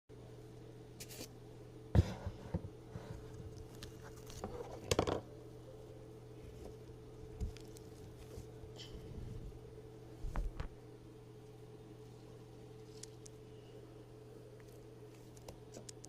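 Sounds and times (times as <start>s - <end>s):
faint hum: 0.1s - 16.0s.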